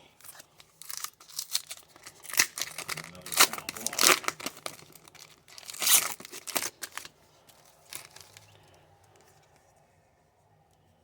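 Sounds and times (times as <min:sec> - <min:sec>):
wrapper tearing and crinkling: 0:00.2 - 0:07.1, 0:07.8 - 0:08.5.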